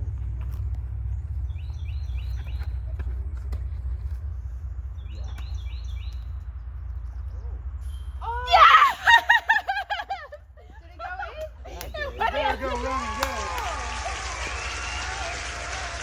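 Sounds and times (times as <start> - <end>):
steady low rumble: 0.0 - 8.6.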